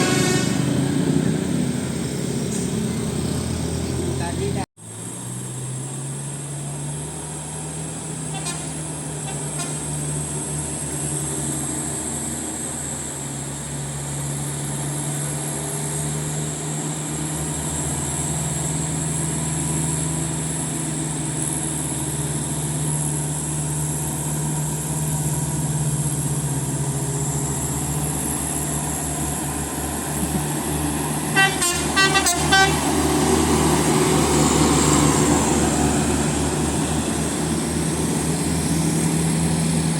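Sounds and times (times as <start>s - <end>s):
multi-tone bus horn pulsing: 0.0s - 1.0s, 8.2s - 10.0s, 31.3s - 33.0s
bus engine running: 0.0s - 39.9s.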